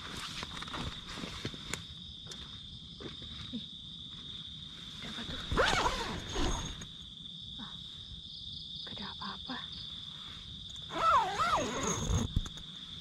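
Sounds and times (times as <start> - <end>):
scraping rustle: 0.0 - 1.9, 4.8 - 7.0, 10.3 - 13.0
small rustles and clicks: 0.0 - 7.0
night insects chirring: 0.0 - 13.0.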